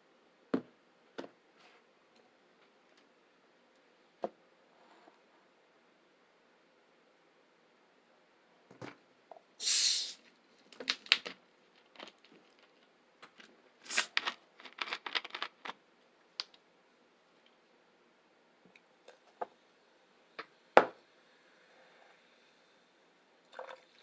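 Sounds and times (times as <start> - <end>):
chips crunching while chewed: 13.9 - 15.8.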